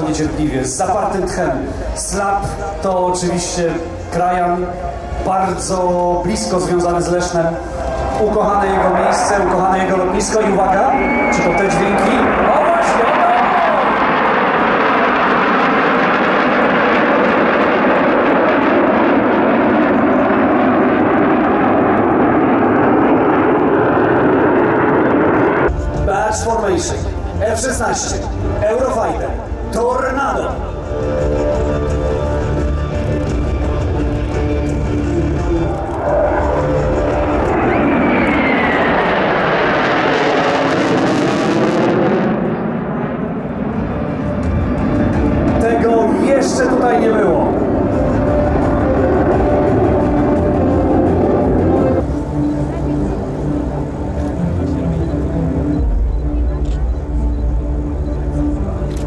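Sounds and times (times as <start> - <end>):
fighter jet flying past: 6.4 - 26.0, 34.0 - 56.6.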